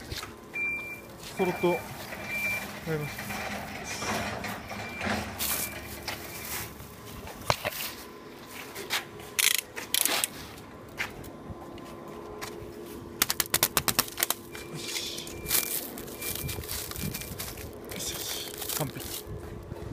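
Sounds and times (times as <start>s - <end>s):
steady low hum: 0.0s - 19.9s
stretch wrap crackling and scraping: 15.4s - 19.3s.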